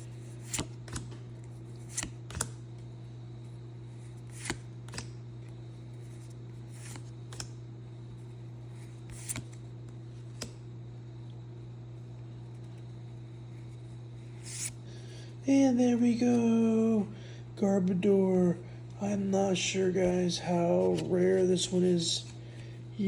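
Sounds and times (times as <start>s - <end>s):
trading cards sliding and flipping: 0.0s - 2.6s, 3.9s - 5.2s, 5.8s - 7.6s, 8.2s - 10.6s, 13.5s - 15.1s, 19.5s - 22.7s
steady low hum: 0.0s - 23.0s.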